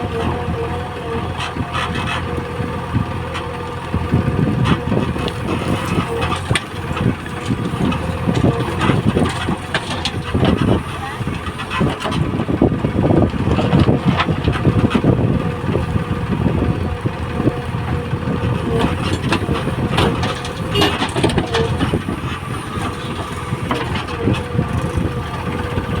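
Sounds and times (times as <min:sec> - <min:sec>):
digger diesel engine running: 0:00.0 - 0:26.0
knocks and clanks: 0:04.6 - 0:12.2, 0:18.6 - 0:24.9.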